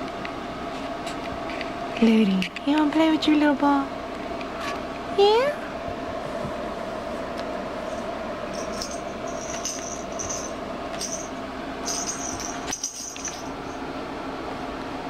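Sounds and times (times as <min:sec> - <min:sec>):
small bell jingling: 0:08.5 - 0:13.8.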